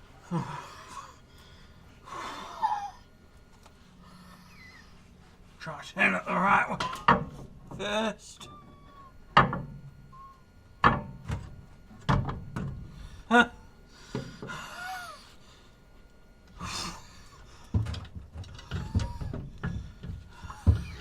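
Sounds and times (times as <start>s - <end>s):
heavy metal clunks and knocks: 10.8s - 12.8s.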